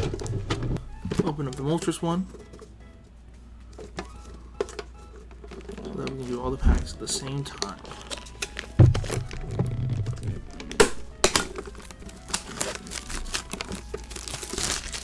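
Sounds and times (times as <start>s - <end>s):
plastic wrapping crinkling and tearing: 7.1s - 15.0s.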